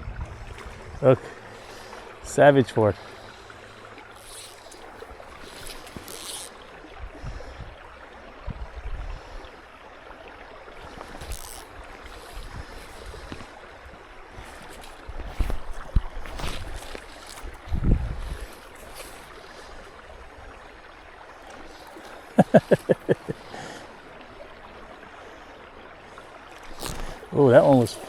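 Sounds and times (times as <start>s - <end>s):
wind buffeting microphone: 0.0s - 1.5s, 15.0s - 18.6s
breeze and water hiss: 0.0s - 28.0s.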